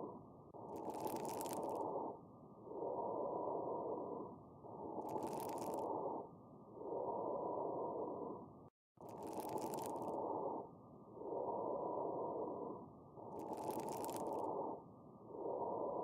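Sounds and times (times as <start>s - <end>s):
breath sounds with fine crackles: 0.0s - 16.0s
crisp high-pitched crackling: 0.6s - 1.9s, 4.9s - 6.1s, 9.0s - 10.2s, 13.3s - 14.5s.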